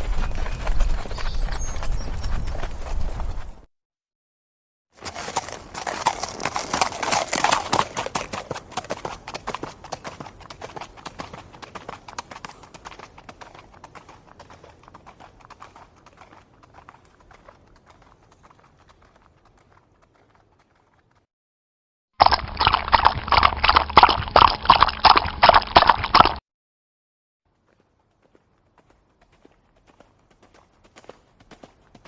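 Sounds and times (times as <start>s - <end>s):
horse hooves clip-clopping: 0.0s - 3.7s, 5.0s - 21.3s, 27.5s - 32.0s
rapid hoofbeats: 0.0s - 3.7s, 5.0s - 21.3s, 27.6s - 32.0s.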